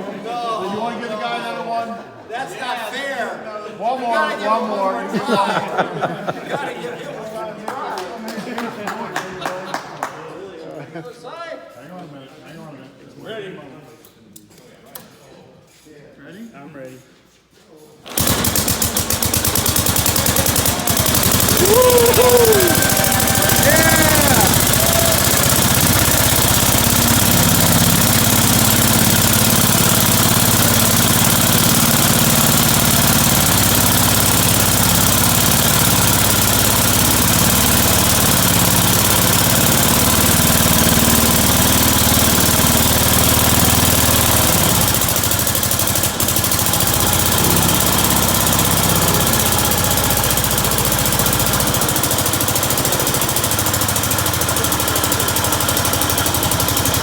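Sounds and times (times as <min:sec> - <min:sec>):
small engine running steadily: 0:18.1 - 0:57.0.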